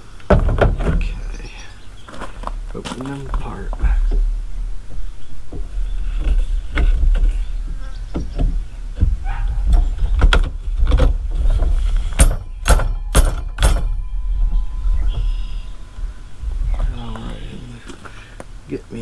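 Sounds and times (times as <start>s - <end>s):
sharp knocks: 0.0s - 18.7s.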